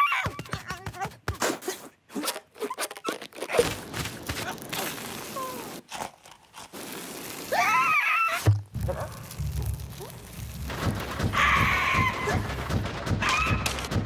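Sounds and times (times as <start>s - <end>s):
sharp clicks and crunches: 2.2s - 7.6s, 8.5s - 14.0s
rustling crinkling noise: 2.4s - 7.6s, 8.6s - 14.0s.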